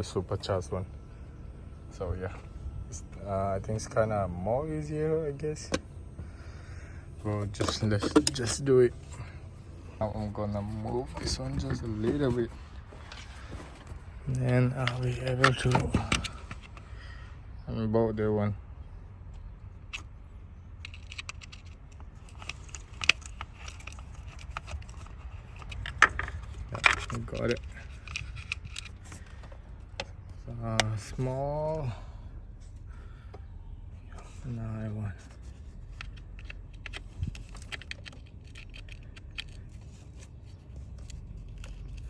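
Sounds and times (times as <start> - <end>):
steady low hum: 0.0 - 42.0
hand tools clicking on metal: 7.5 - 8.7.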